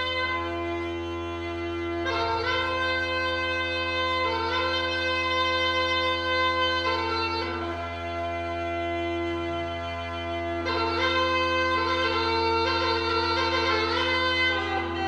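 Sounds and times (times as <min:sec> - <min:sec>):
sustained instrumental chords: 0:00.0 - 0:15.0.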